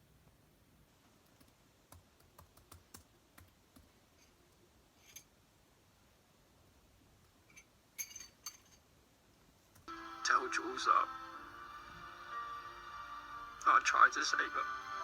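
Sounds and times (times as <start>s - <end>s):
faint clicks and taps: 1.1s - 4.6s.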